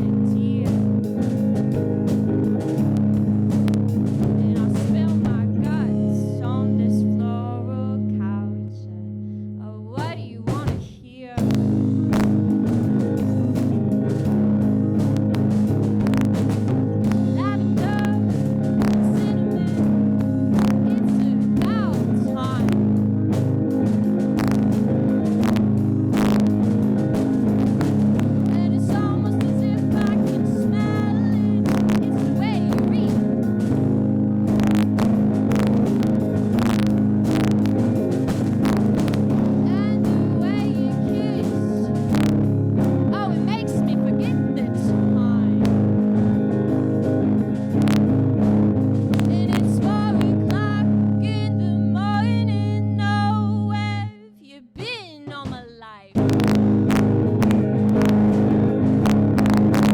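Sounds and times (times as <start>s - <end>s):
sustained low bass line: 0.0s - 9.8s, 11.4s - 54.1s, 56.2s - 59.9s
live band guitar music: 0.0s - 54.1s, 54.8s - 59.9s.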